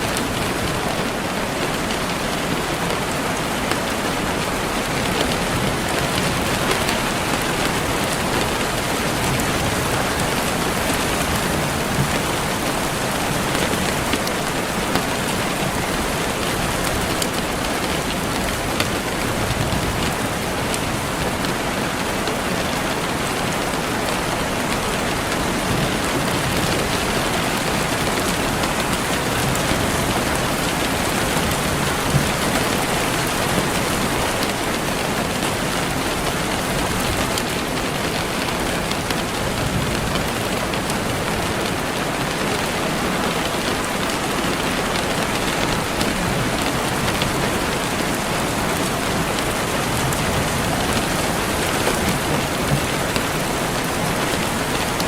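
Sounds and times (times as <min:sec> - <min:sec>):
rain pattering: 0:00.0 - 0:55.0.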